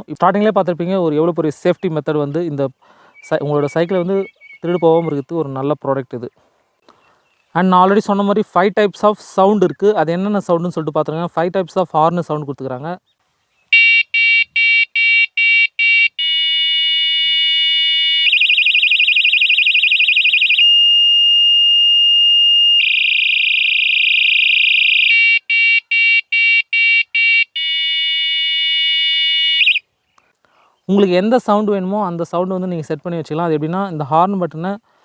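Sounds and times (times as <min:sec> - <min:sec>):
electronic horn beeps: 0:13.7 - 0:19.3, 0:20.1 - 0:29.8
electronic horn steady tone: 0:13.8 - 0:19.2, 0:20.6 - 0:29.8.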